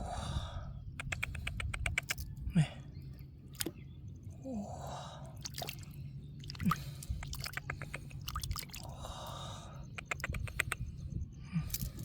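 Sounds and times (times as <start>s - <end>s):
steady low hum: 0.0s - 12.0s
quick sharp clicks: 1.0s - 2.2s, 10.0s - 10.9s
wet dripping: 5.4s - 9.0s.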